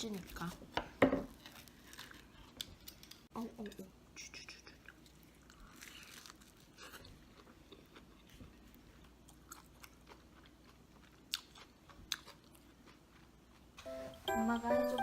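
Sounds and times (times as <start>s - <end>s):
crunchy chewing of food: 1.3s - 3.2s, 4.9s - 13.9s.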